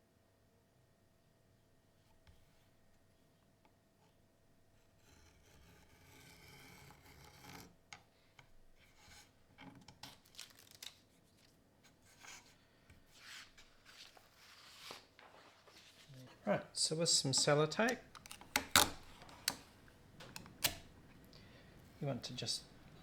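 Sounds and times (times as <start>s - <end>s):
paper sheets rustling: 10.1s - 11.6s, 13.1s - 16.5s
scissors cutting paper: 17.3s - 21.0s.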